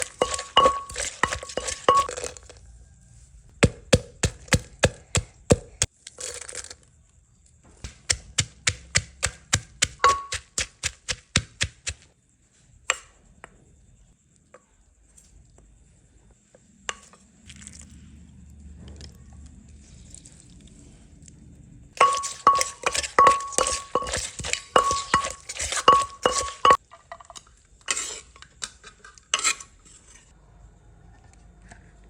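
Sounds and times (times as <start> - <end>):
pestle pounding in a mortar: 0.0 - 2.1, 3.6 - 5.9, 7.8 - 12.0, 22.0 - 26.8.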